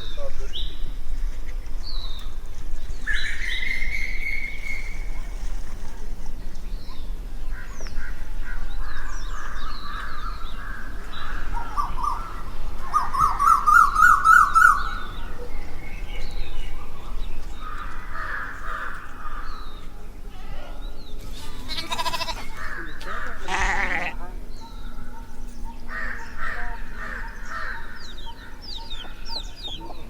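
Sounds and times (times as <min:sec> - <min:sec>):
birds chirping faintly: 0:00.0 - 0:30.0
goats bleating: 0:21.4 - 0:24.3.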